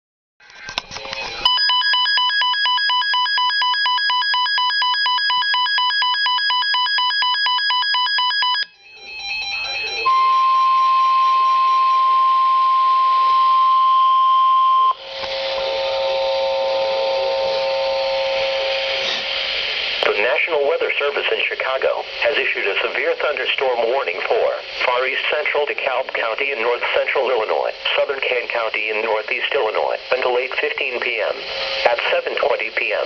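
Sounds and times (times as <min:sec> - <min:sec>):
multi-pitch steady tone: 0:01.0 - 0:20.2
electronic warble alert: 0:01.2 - 0:13.8.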